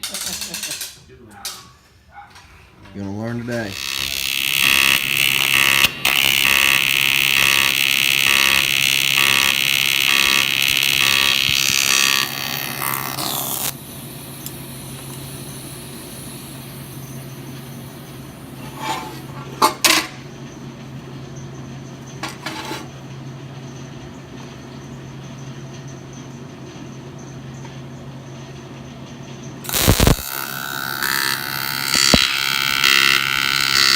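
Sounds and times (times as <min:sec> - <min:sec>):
power tool running and winding down: 0:03.7 - 0:13.8, 0:29.7 - 0:33.9.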